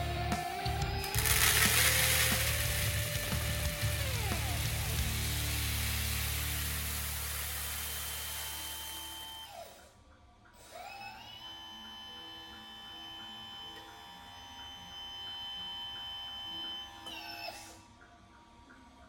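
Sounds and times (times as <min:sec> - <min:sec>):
electric motor whine: 0:00.0 - 0:09.9.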